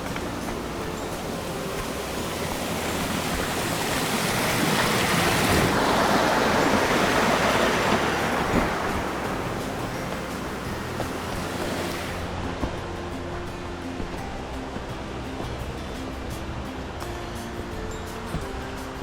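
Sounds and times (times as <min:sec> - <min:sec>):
mountain stream rushing: 0:00.0 - 0:17.0.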